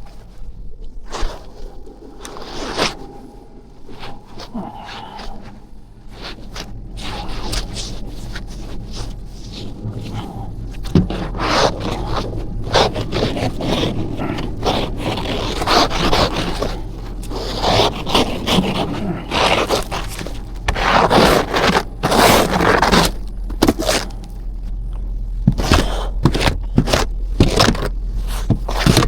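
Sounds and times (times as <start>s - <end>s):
snow being scraped: 6.1s - 29.0s.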